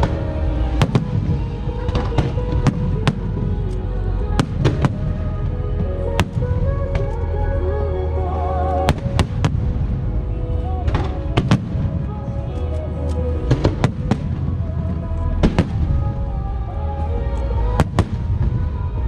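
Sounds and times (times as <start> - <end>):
fireworks bangs: 0.0 - 3.7, 4.4 - 7.2, 8.8 - 10.2, 10.8 - 12.6, 13.4 - 16.3
deep rumble: 0.0 - 19.0
music playing: 0.0 - 19.0.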